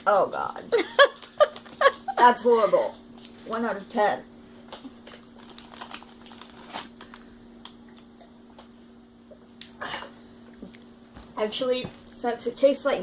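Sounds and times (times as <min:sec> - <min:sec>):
steady low hum: 0:00.0 - 0:13.0
person eating biscuit crunching: 0:04.8 - 0:08.2.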